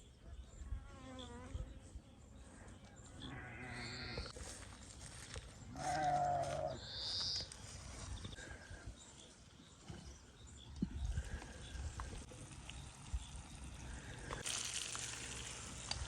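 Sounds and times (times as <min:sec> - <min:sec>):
goat or sheep bleating: 0:05.8 - 0:06.8.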